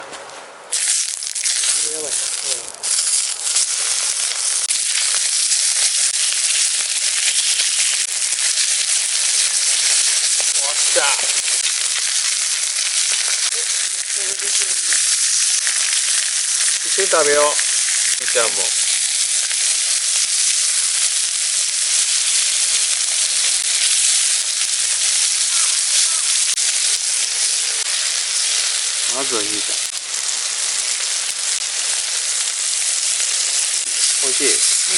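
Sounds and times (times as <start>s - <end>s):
steak sizzling in a pan: 0.7s - 34.9s.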